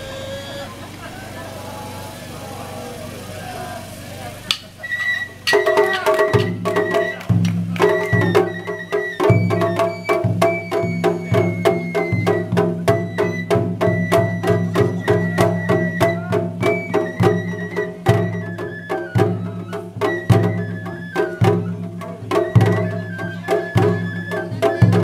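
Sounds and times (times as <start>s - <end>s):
drum and percussion beat: 4.4s - 25.0s.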